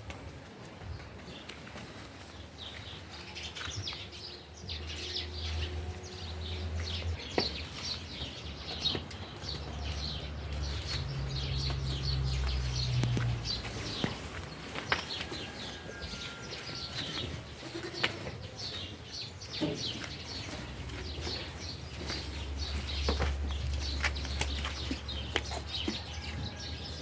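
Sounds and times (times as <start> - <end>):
small birds chirping: 0.8 - 27.0.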